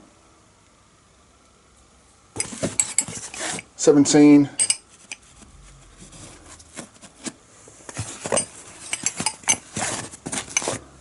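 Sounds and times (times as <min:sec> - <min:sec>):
spanners clinking together: 0:04.6 - 0:05.2, 0:08.2 - 0:09.7.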